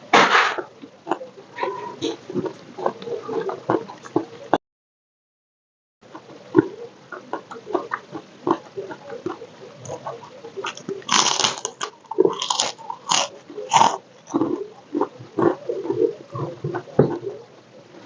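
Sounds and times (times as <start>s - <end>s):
wet chewing and lip smacks: 9.2s - 15.6s
loud crunches of crispy food: 10.6s - 14.5s.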